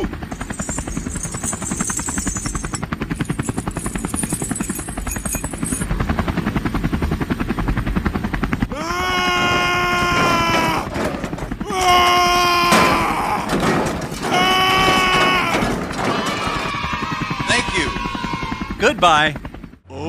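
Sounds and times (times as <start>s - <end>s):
engine chugging: 0.0s - 19.8s.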